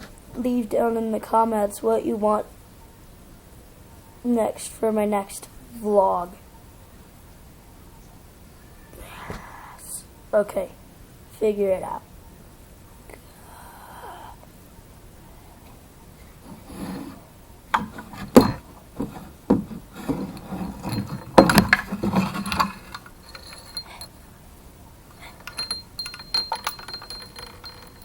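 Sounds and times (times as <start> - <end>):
small hard objects clicking and knocking: 17.7 - 24.1, 25.1 - 28.0
glassy clink: 17.8 - 18.7, 20.0 - 24.2, 25.1 - 28.0.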